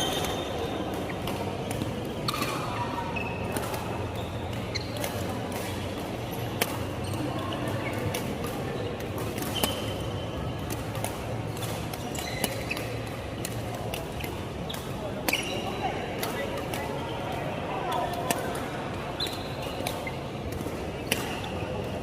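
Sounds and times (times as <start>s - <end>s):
shoes squeaking on floor: 0.0s - 1.1s, 2.2s - 5.2s, 9.4s - 10.4s, 12.1s - 13.0s, 15.3s - 15.9s, 19.2s - 20.2s
racket hitting shuttlecock: 4.9s - 15.6s, 17.9s - 21.6s.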